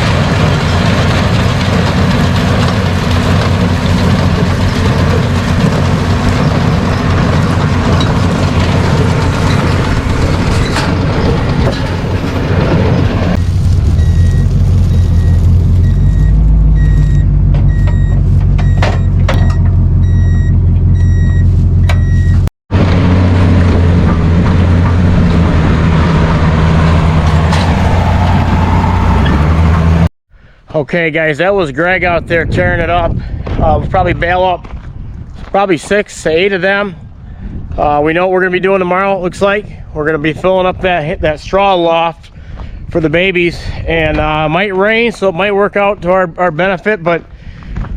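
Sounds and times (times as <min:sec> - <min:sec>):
heavy machinery engine running: 0:00.0 - 0:30.1.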